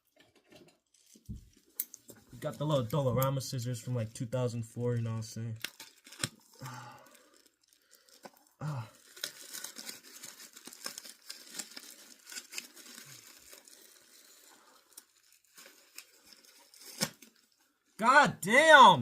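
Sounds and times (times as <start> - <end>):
packaging being torn and crinkled: 5.5 - 17.8.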